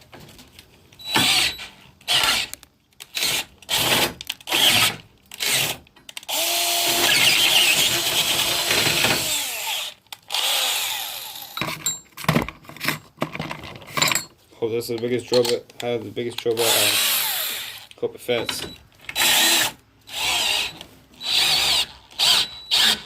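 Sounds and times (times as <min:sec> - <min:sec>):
cordless drill motor whine: 0:01.0 - 0:02.4, 0:06.3 - 0:11.6, 0:16.7 - 0:17.9, 0:19.2 - 0:23.0.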